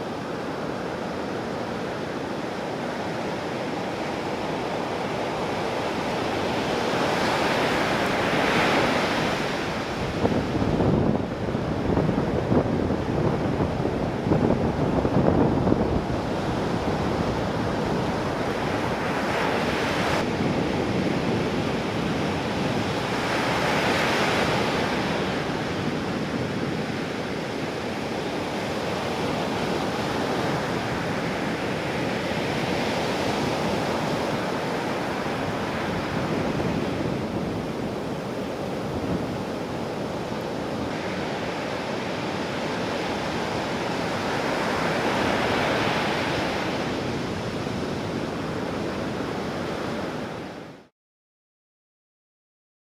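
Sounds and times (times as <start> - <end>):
waves breaking: 0.1 - 12.6
wind buffeting microphone: 4.0 - 50.4.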